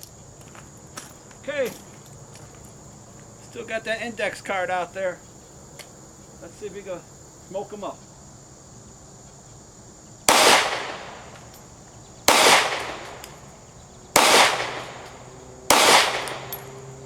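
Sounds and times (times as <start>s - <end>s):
pistol shots echoing: 10.2s - 17.0s.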